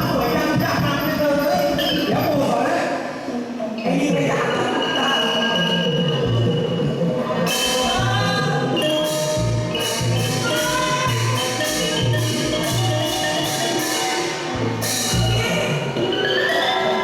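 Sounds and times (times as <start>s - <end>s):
xylophone melody: 4.4s - 17.0s.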